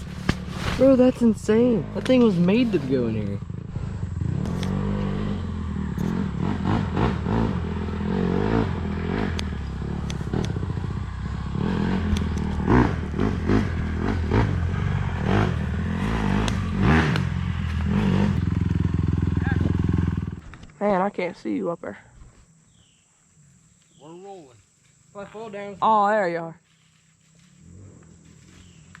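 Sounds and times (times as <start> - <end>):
vehicle engine running: 0.0 - 21.2.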